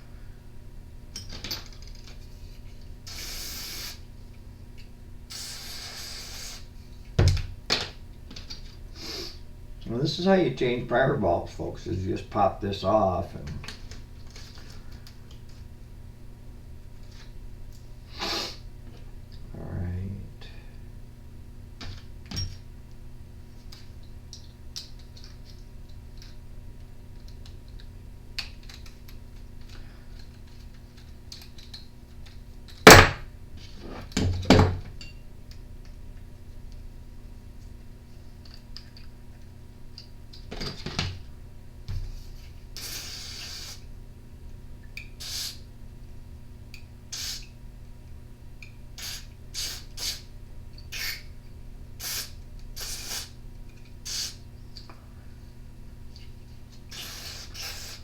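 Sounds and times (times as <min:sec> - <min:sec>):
steady low hum: 0:00.0 - 0:58.0
short hiss: 0:03.0 - 0:04.1, 0:05.3 - 0:06.7, 0:18.1 - 0:18.7, 0:42.8 - 0:43.8, 0:45.2 - 0:45.6, 0:47.1 - 0:47.5, 0:49.0 - 0:50.2, 0:52.0 - 0:53.3, 0:54.0 - 0:54.4, 0:56.9 - 0:58.0
loud sharp knocks: 0:32.9 - 0:33.2.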